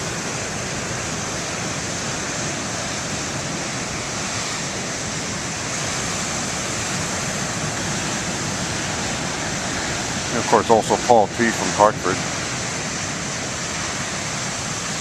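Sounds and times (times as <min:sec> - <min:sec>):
ocean waves breaking: 0:00.0 - 0:15.0.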